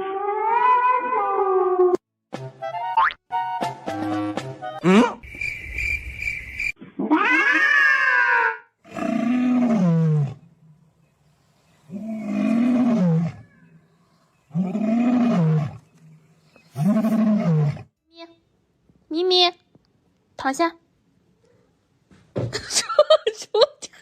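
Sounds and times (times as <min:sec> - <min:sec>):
cat yowling: 0:07.1 - 0:08.6.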